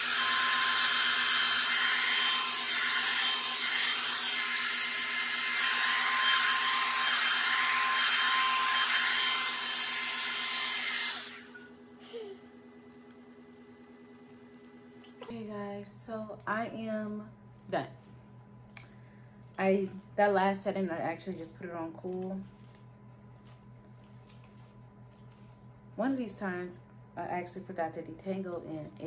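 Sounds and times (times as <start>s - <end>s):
hot air brush running: 0.0s - 12.4s.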